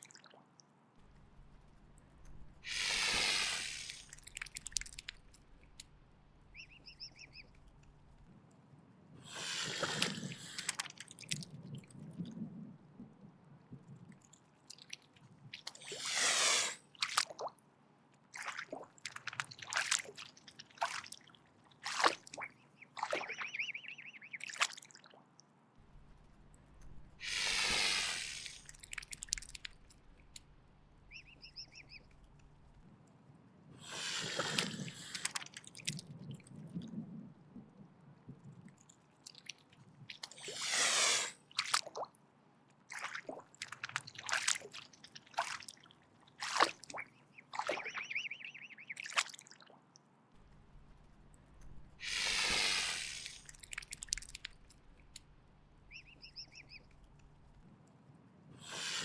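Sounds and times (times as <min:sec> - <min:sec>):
short wet clicks: 0:00.0 - 0:08.3, 0:09.7 - 0:12.3, 0:13.9 - 0:16.2, 0:17.0 - 0:17.6, 0:18.2 - 0:33.2, 0:34.3 - 0:36.9, 0:38.4 - 0:40.7, 0:41.5 - 0:58.0
swan hissing: 0:02.4 - 0:05.3, 0:09.2 - 0:10.8, 0:15.8 - 0:16.9, 0:26.9 - 0:30.2, 0:31.0 - 0:32.1, 0:33.8 - 0:35.4, 0:40.4 - 0:41.5, 0:51.7 - 0:56.9, 0:58.6 - 0:59.0.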